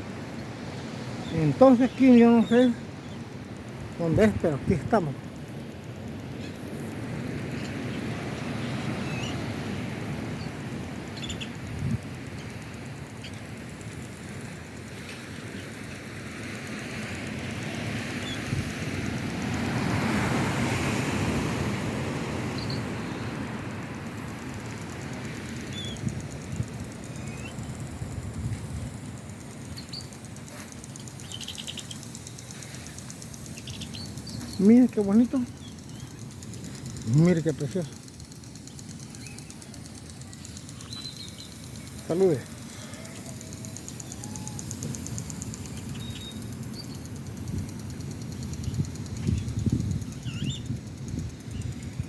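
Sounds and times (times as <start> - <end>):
faint insect ticking: 0.2 - 52.0
wind on microphone: 11.5 - 12.3, 48.5 - 52.0
bird chirps: 25.4 - 27.8, 29.6 - 47.2, 48.3 - 50.8.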